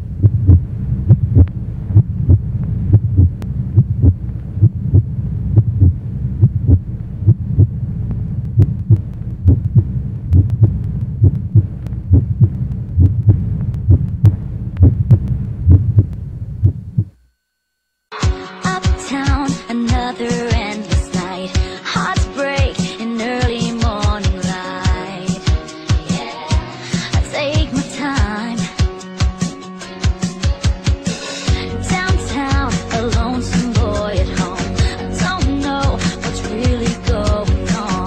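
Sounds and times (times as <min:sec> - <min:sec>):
heartbeat low beats: 0:00.0 - 0:17.2
low hum: 0:00.0 - 0:17.9.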